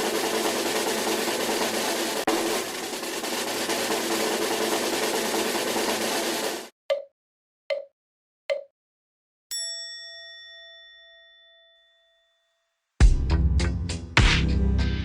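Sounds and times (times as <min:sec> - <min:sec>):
drum-heavy music: 0:00.0 - 0:06.7, 0:13.0 - 0:15.0
bell-like ding: 0:09.5 - 0:12.8.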